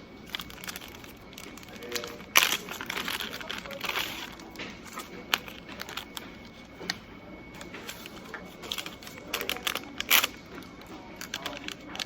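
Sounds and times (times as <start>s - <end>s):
clicks and rustling of handling: 0.2s - 12.0s.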